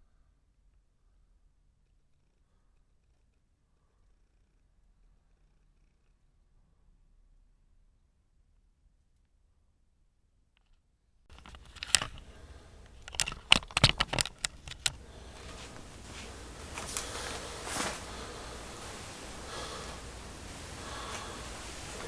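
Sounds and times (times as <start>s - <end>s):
sharp clicks and knocks: 11.3s - 18.0s
rustling hiss: 11.3s - 22.0s.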